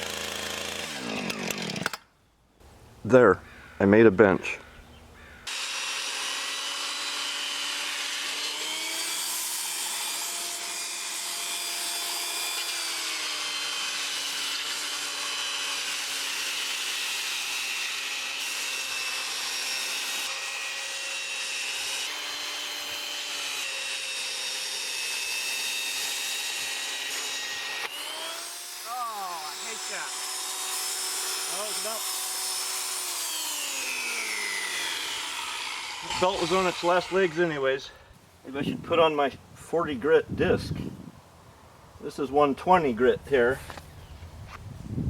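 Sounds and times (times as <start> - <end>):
belt sander motor whine: 25.8 - 37.6
sandpaper rasping on wood: 28.8 - 32.8, 35.6 - 37.6.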